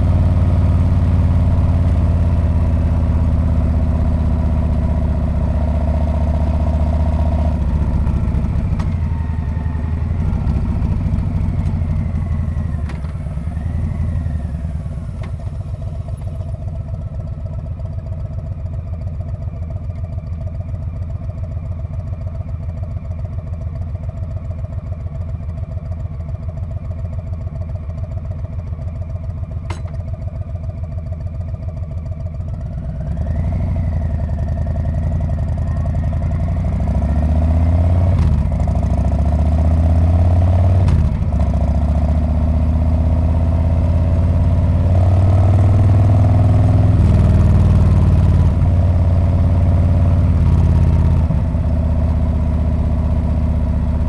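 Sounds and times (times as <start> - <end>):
motorcycle engine revving: 0.0 - 16.8, 32.9 - 54.0.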